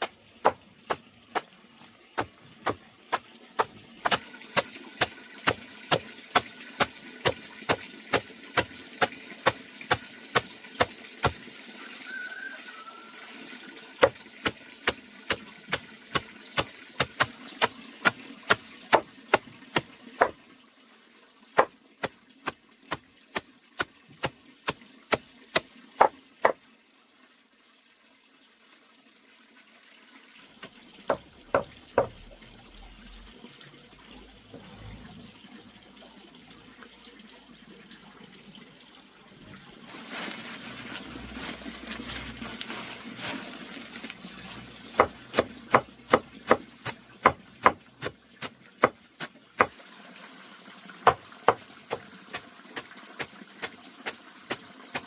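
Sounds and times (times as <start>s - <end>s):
rapid chopping strokes: 2.2s - 11.4s, 14.0s - 20.4s, 44.9s - 49.8s, 51.0s - 55.0s.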